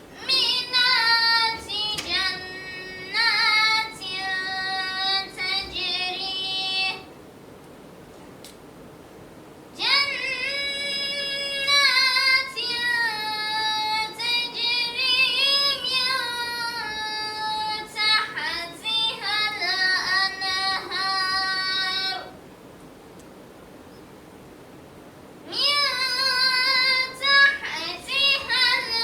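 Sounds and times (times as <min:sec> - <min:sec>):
child singing solo: 0:00.2 - 0:07.1, 0:25.5 - 0:29.0.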